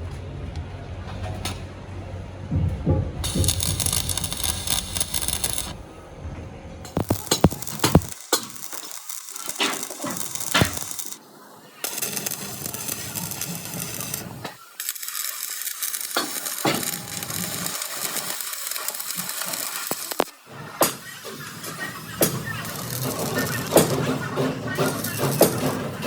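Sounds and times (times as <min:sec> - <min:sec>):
steady hiss: 0:03.2 - 0:05.8, 0:06.9 - 0:23.4.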